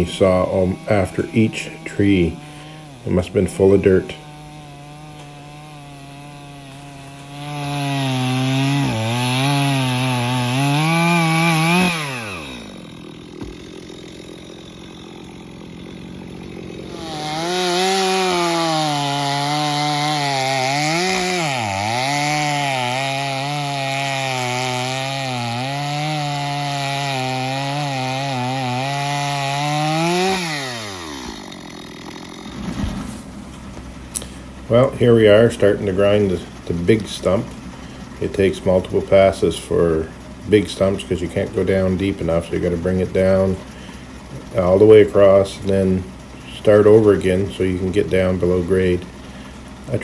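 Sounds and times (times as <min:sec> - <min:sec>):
chainsaw cutting stump: 0:00.0 - 0:50.0.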